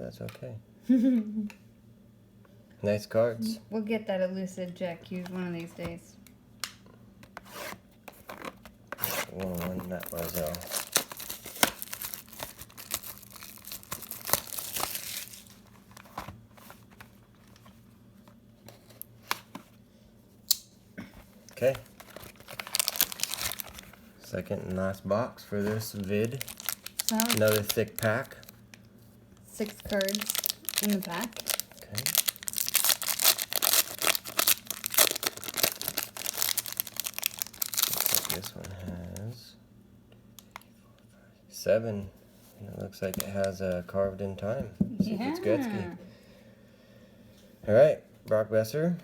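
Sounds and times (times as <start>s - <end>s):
packaging crinkling and tearing: 8.1s - 17.8s, 21.4s - 24.0s, 25.6s - 28.7s, 29.4s - 39.3s.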